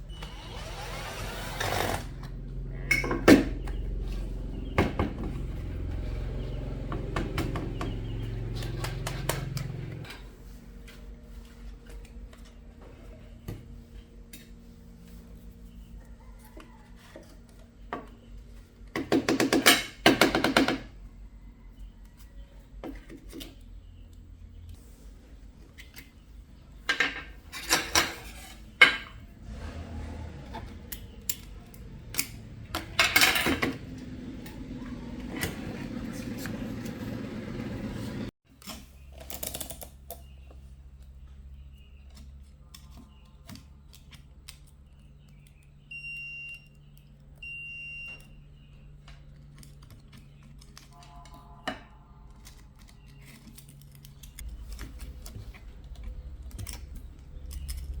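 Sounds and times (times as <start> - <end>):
low electrical hum: 0.0 - 20.2
small parts and tools clattering: 26.8 - 29.8, 30.5 - 34.2, 38.5 - 40.6, 49.0 - 58.0.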